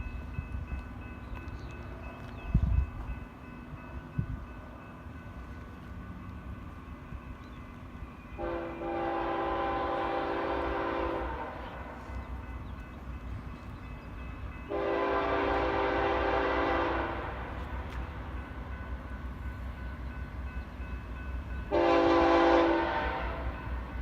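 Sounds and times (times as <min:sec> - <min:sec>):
locomotive horn blasts: 0:08.4 - 0:12.1, 0:14.7 - 0:18.0, 0:21.7 - 0:23.7.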